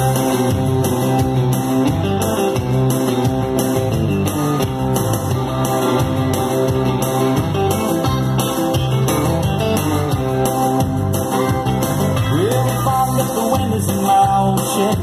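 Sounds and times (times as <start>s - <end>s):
upbeat country band music: 0.0s - 15.0s.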